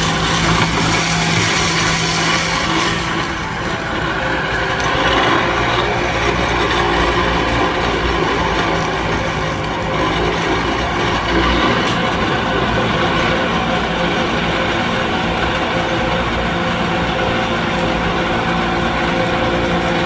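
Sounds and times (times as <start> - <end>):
brush cutter chopping brush: 0.0 - 6.4
diesel engine running: 0.0 - 20.0.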